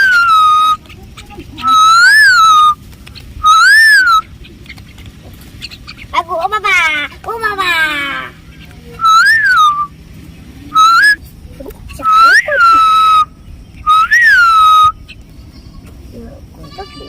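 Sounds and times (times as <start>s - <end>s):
loud rising whistles: 0.0s - 0.8s, 1.6s - 2.8s, 3.4s - 4.2s, 9.0s - 10.0s, 10.7s - 11.2s, 12.0s - 15.0s.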